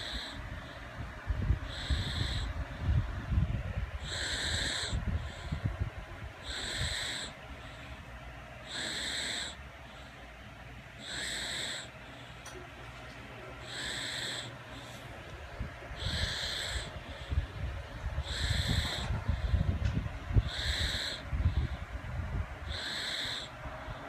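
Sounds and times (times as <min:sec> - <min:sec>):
baby snoring: 0:00.0 - 0:00.4, 0:01.7 - 0:02.5, 0:04.0 - 0:05.5, 0:06.4 - 0:07.4, 0:08.6 - 0:09.6, 0:11.0 - 0:11.9, 0:13.6 - 0:15.0, 0:16.0 - 0:16.9, 0:18.2 - 0:19.5, 0:20.4 - 0:21.2, 0:22.7 - 0:23.5.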